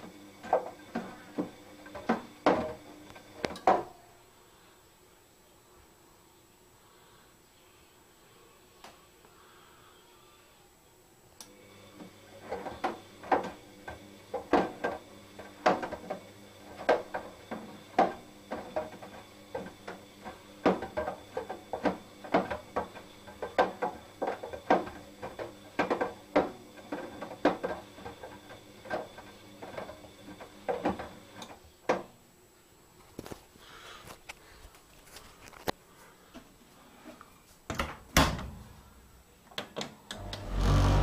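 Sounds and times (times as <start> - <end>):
motor hum: 40.2 - 41.0.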